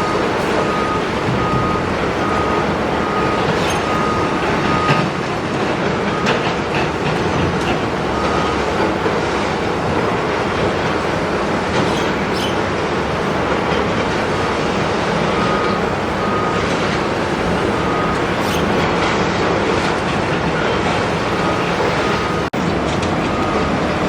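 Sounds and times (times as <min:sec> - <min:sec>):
excavator engine: 0:00.0 - 0:24.0
high metallic squeals: 0:01.7 - 0:05.0, 0:11.8 - 0:12.7, 0:17.6 - 0:18.8.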